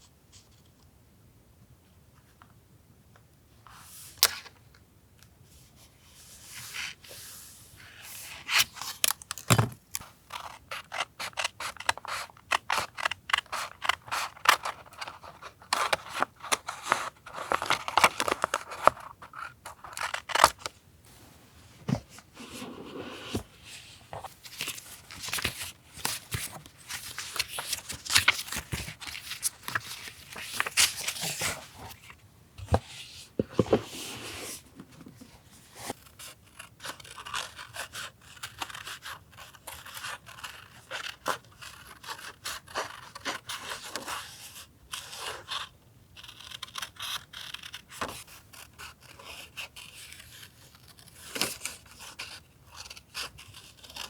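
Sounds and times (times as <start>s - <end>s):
paper rustling and being cut: 8.5s - 20.7s.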